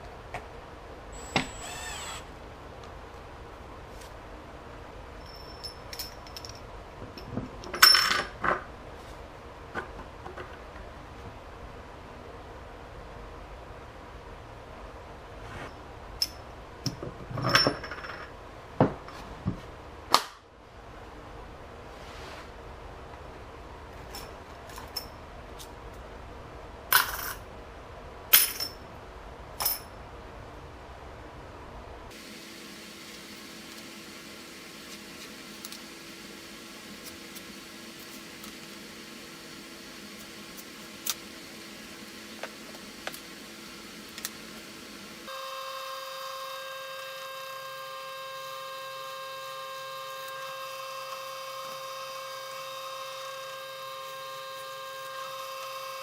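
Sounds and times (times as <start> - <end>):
metal objects clinking: 5.2 - 6.7.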